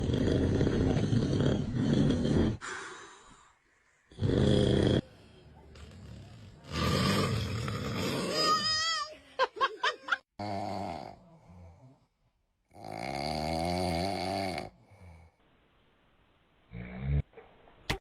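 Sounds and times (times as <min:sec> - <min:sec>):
man snoring loudly: 0:00.0 - 0:02.6, 0:04.1 - 0:05.2, 0:05.8 - 0:08.6, 0:10.4 - 0:11.8, 0:12.7 - 0:15.4.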